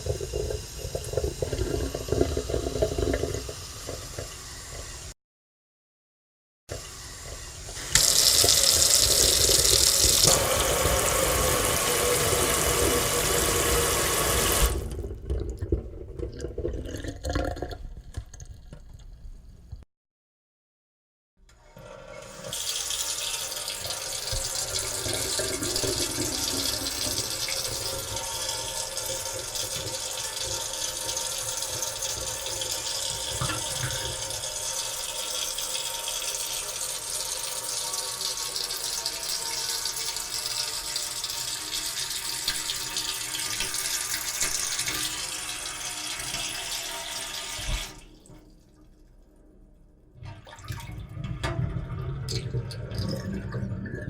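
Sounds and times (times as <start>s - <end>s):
sink faucet running: 0.0s - 5.2s, 6.7s - 15.9s, 21.8s - 48.4s.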